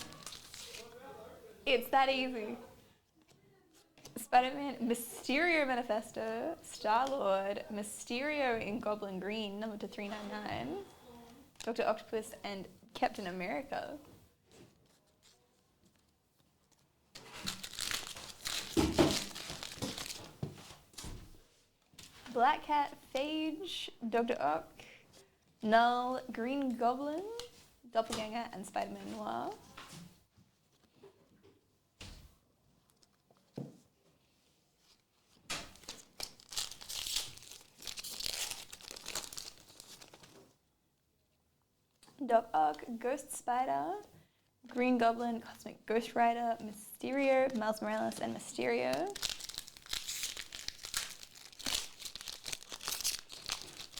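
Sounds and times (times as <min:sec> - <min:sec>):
wrapper tearing and crinkling: 0:00.0 - 0:01.0, 0:17.2 - 0:20.4, 0:35.7 - 0:40.4, 0:49.0 - 0:53.9.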